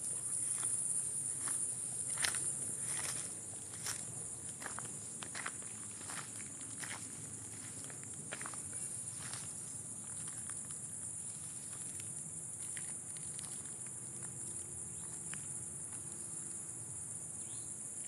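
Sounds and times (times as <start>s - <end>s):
night insects chorus: 0.0s - 18.0s
footsteps crunching through undergrowth: 0.3s - 12.0s.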